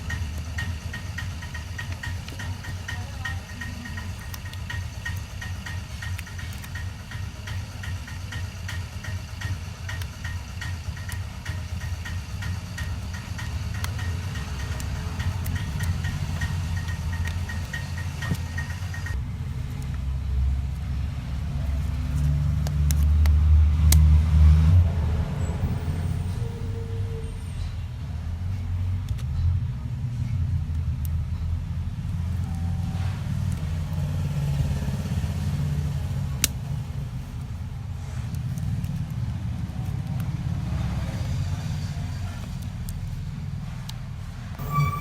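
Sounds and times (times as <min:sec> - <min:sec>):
faint fast ticking: 0:00.0 - 0:19.2
low engine-like rumble: 0:00.0 - 0:45.0.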